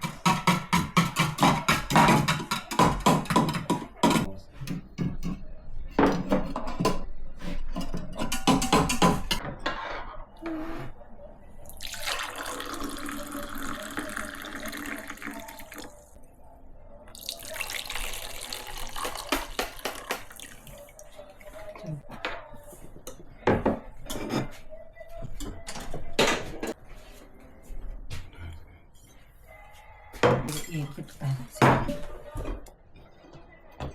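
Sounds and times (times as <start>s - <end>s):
tap water running into sink: 17.2s - 20.8s.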